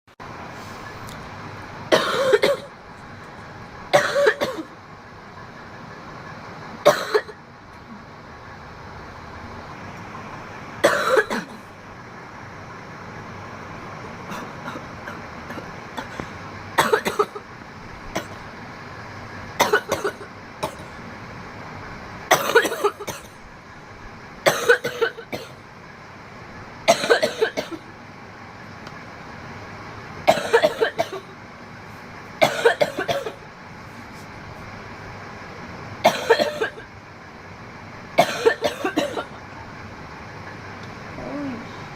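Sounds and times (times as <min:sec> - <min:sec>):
steady background hiss: 0:00.2 - 0:41.9
woman coughing hard: 0:01.9 - 0:02.7, 0:03.9 - 0:04.8, 0:06.8 - 0:07.4, 0:10.8 - 0:11.7, 0:14.3 - 0:17.4, 0:18.1 - 0:18.4, 0:19.6 - 0:20.9, 0:22.3 - 0:23.4, 0:24.4 - 0:25.6, 0:26.9 - 0:27.8, 0:30.2 - 0:31.3, 0:32.4 - 0:33.4, 0:36.0 - 0:36.8, 0:38.2 - 0:39.3.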